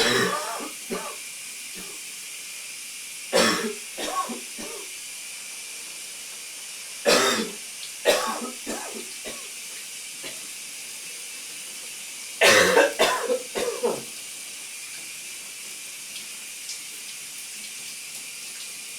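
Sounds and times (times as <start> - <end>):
man coughing: 0.0 - 1.2, 3.4 - 4.8, 7.1 - 9.0, 12.4 - 14.0
shower running: 0.0 - 18.9.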